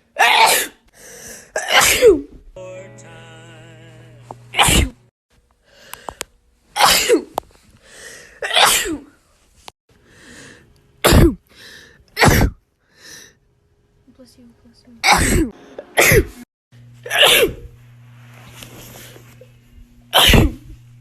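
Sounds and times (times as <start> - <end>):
person sneezing: 0.2 - 0.8, 1.6 - 2.3, 4.6 - 5.0, 6.8 - 7.4, 8.4 - 9.2, 11.0 - 11.5, 12.2 - 12.6, 15.0 - 16.4, 17.0 - 17.7, 20.1 - 20.6.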